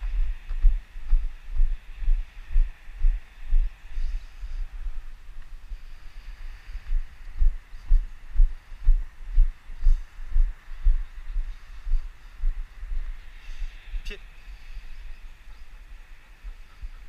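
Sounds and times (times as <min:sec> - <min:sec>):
walking footsteps thudding: 0:00.0 - 0:01.8.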